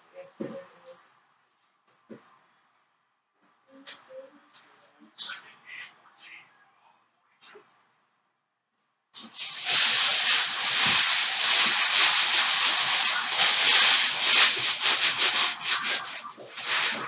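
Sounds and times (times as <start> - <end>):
loud close rustling and crackling: 9.2 - 17.0.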